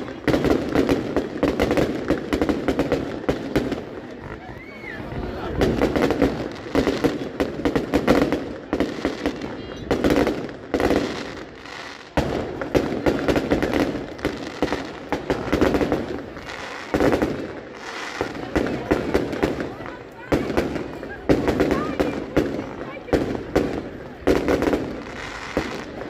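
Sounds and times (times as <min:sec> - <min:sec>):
fireworks bangs and crackling: 0:00.0 - 0:26.0
heavy firework booms: 0:05.5 - 0:26.0.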